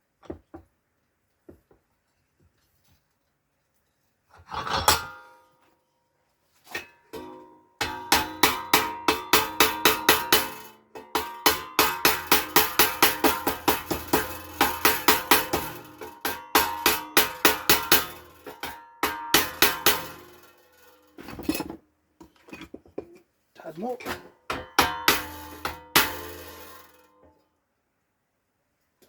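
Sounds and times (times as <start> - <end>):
hammer striking sheet metal: 7.1 - 21.1, 24.1 - 27.1.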